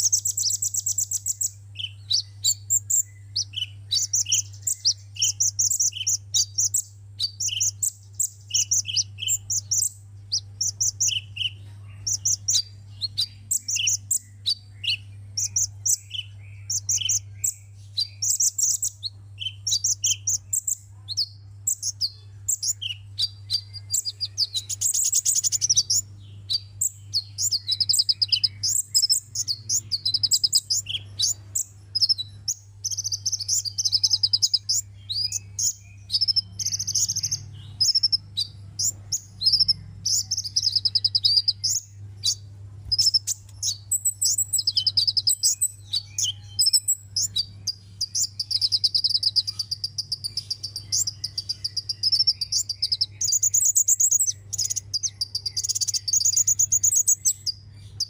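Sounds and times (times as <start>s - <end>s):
steady low hum: 0.0s - 58.0s
sunbird singing: 0.0s - 58.0s.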